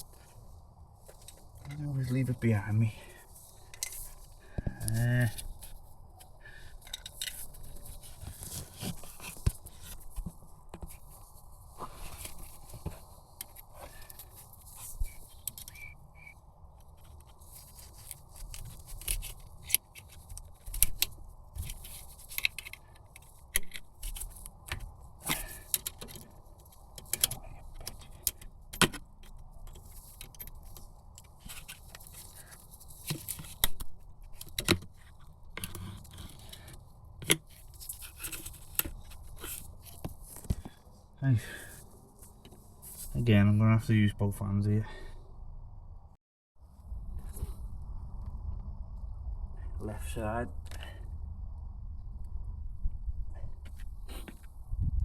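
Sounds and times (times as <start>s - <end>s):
tools clicking and scraping metal: 3.7s - 4.2s, 6.7s - 7.8s.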